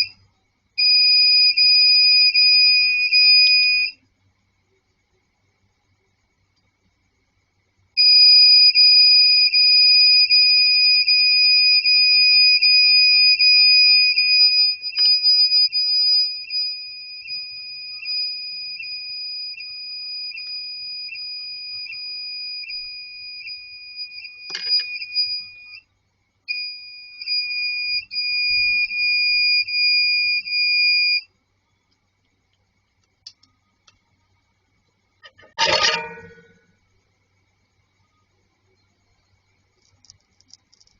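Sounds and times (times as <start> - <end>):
high-pitched electronic beep tone: 11.7 - 25.8, 35.2 - 36.6.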